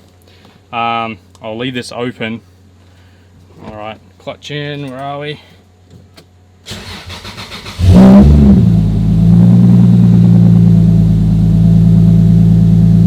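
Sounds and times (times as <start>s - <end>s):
car engine starting and idling: 6.7s - 13.0s.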